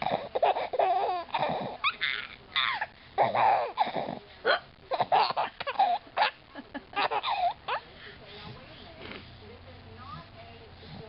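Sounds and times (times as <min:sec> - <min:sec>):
baby laughing: 0:00.1 - 0:03.8, 0:04.9 - 0:07.8
woman hiccuping: 0:04.5 - 0:04.7.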